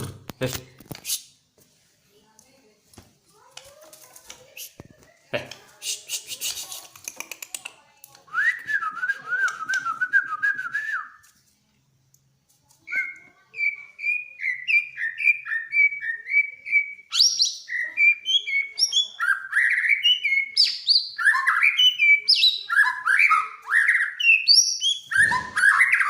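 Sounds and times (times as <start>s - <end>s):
bird singing whistles: 12.9s - 26.0s.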